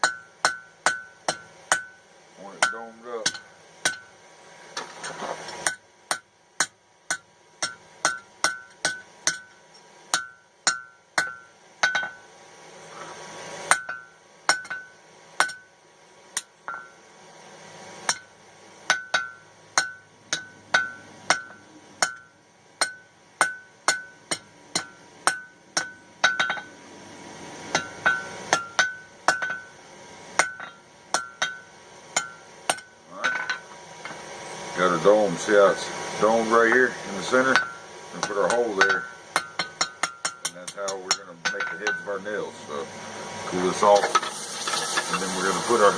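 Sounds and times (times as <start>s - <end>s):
hammer striking steel on anvil: 0.0s - 4.2s, 5.6s - 12.3s, 13.7s - 15.7s, 16.4s - 17.0s, 18.0s - 26.8s, 27.7s - 29.8s, 30.4s - 34.2s, 36.7s - 42.2s.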